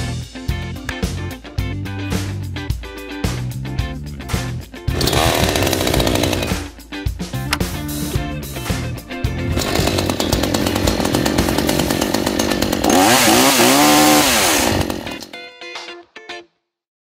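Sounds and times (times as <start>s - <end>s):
chainsaw engine revving: 4.9s - 6.6s, 9.5s - 15.3s.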